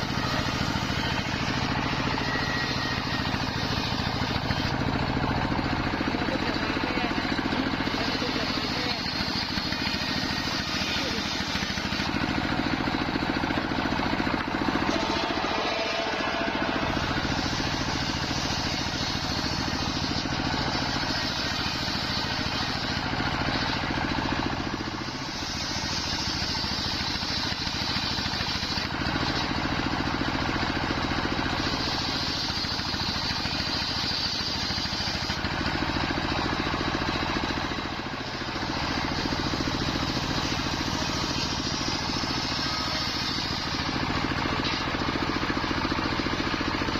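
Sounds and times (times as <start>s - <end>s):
machine hum: 0.0s - 26.8s
circular saw cutting wood: 0.0s - 46.9s.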